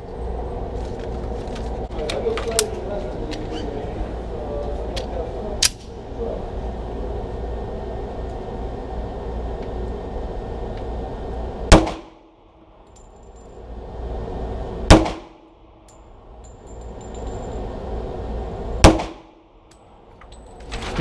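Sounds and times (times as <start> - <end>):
steady low rumble: 0.0 - 21.0
handgun shots echoing: 18.8 - 19.2.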